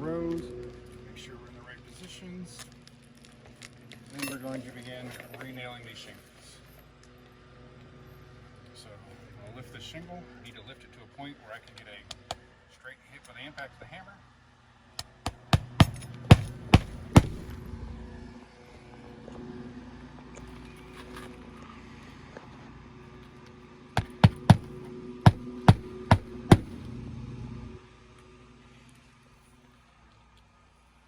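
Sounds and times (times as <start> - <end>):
hammer driving roofing nails: 15.0 - 17.6, 24.0 - 26.8
lawnmower humming: 24.0 - 28.1.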